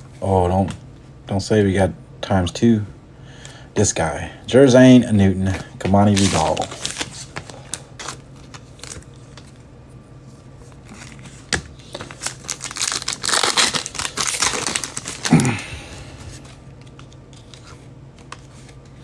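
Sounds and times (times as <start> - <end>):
plastic wrapping crinkling and tearing: 6.0 - 9.6, 10.8 - 18.4.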